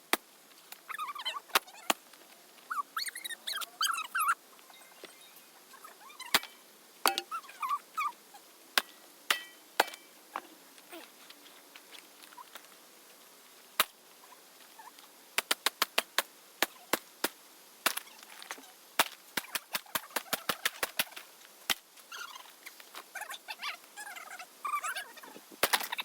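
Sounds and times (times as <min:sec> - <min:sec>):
laptop being struck and smashed: 0:09.3 - 0:10.1.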